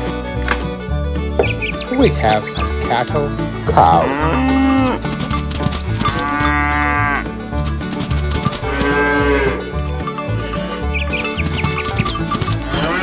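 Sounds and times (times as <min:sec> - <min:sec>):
background music: 0:00.0 - 0:13.0
cow mooing: 0:03.7 - 0:05.1, 0:06.0 - 0:07.3.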